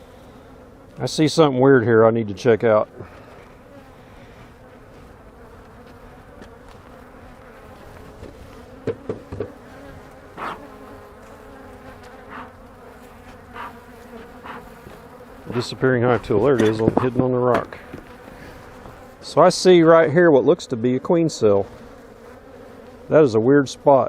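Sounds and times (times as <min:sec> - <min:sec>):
honey bees buzzing: 0:00.0 - 0:24.0.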